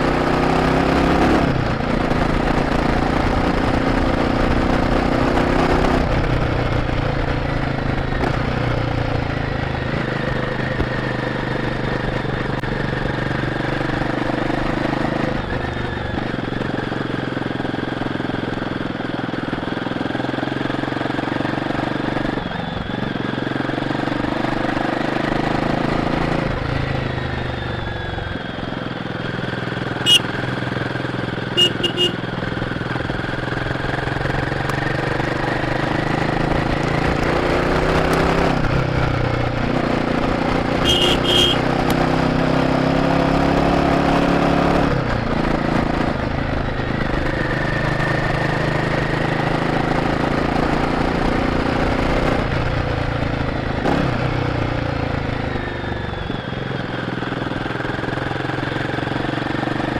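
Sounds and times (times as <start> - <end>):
motorcycle engine revving: 0.0 - 59.9
short high beeps: 30.1 - 30.3, 31.6 - 32.2, 40.8 - 41.6.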